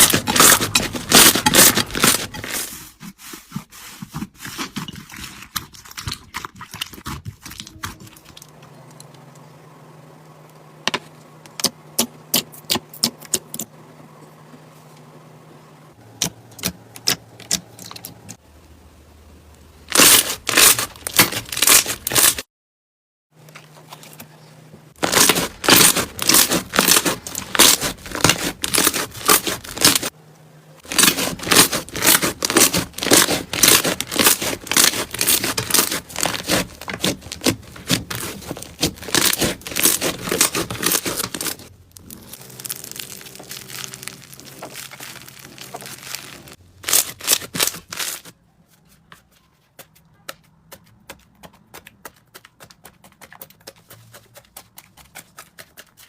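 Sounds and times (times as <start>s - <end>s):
slime crackling and popping: 19.9s - 22.4s, 25.0s - 30.1s, 30.9s - 48.3s.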